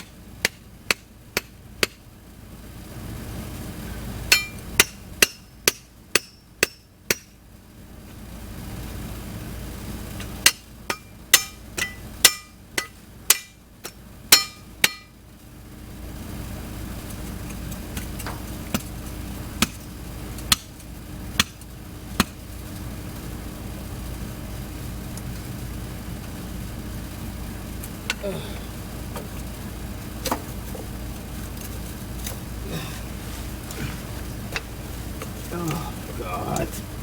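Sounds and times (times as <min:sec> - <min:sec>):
hammer strikes on metal: 0:00.0 - 0:02.0, 0:04.3 - 0:07.4, 0:10.4 - 0:15.1, 0:20.5 - 0:20.7, 0:21.4 - 0:21.6
steady low hum: 0:00.0 - 0:37.0.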